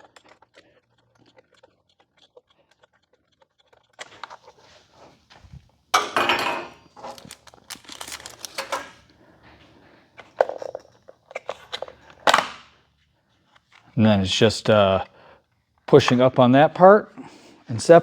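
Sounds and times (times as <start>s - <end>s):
plastic bag crinkling: 6.8s - 9.2s
small metal parts clicking: 7.0s - 8.9s.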